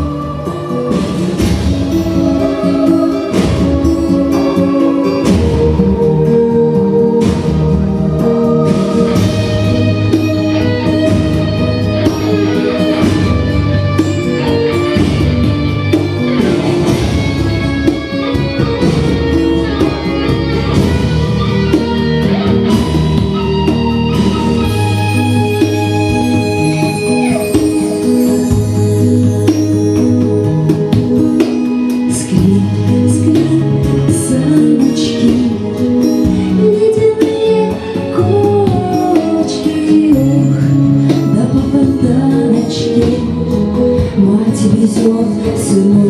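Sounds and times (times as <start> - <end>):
instrumental music: 0.0 - 46.0.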